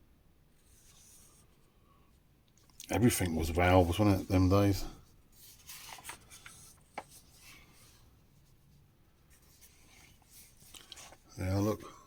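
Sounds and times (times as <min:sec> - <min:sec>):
paper pages rustling: 0:00.6 - 0:01.6, 0:02.6 - 0:08.6, 0:09.3 - 0:11.8.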